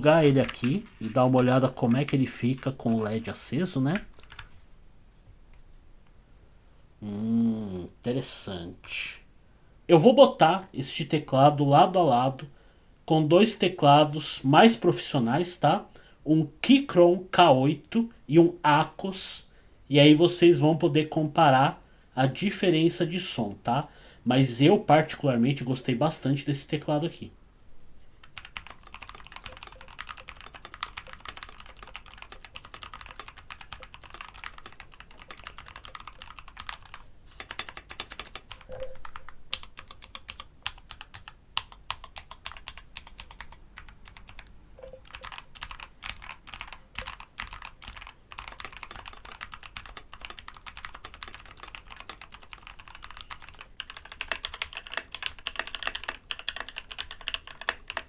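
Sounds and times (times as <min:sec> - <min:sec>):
fast typing on mechanical keyboard: 0:00.1 - 0:03.1, 0:04.2 - 0:04.5, 0:28.3 - 0:58.0.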